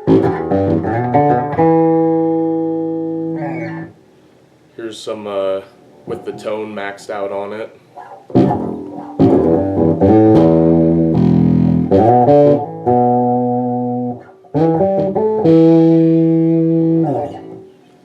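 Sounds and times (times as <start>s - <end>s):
electric bass plucked notes: 0.0s - 4.0s, 8.3s - 17.8s.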